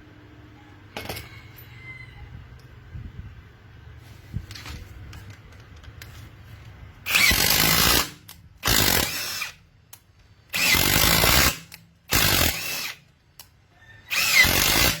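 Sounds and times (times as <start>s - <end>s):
cordless drill bursts: 7.1s - 9.6s, 10.5s - 13.0s, 14.1s - 15.0s.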